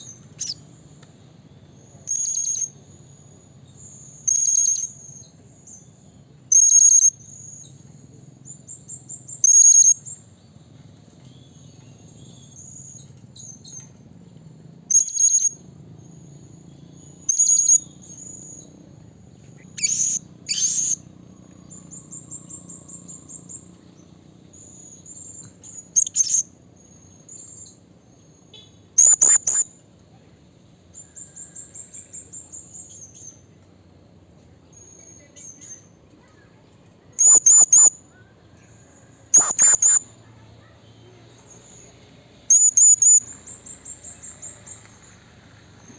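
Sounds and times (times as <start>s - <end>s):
parrot high-pitched calls: 19.6s - 21.0s, 26.0s - 26.5s, 29.0s - 29.7s, 37.2s - 38.0s, 39.3s - 40.1s, 42.5s - 43.2s
parrot soft twittering: 19.6s - 21.0s, 29.0s - 29.7s, 37.2s - 37.9s, 39.3s - 40.0s, 42.5s - 43.2s.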